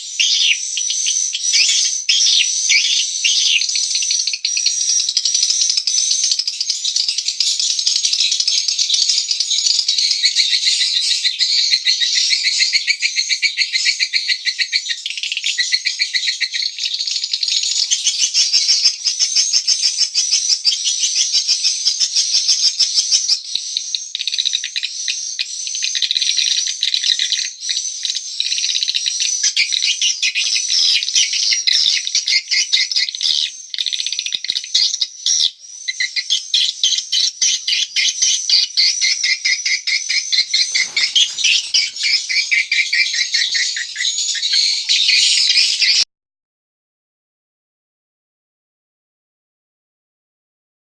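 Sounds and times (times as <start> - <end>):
swiftlets twittering: 40.3 - 45.4.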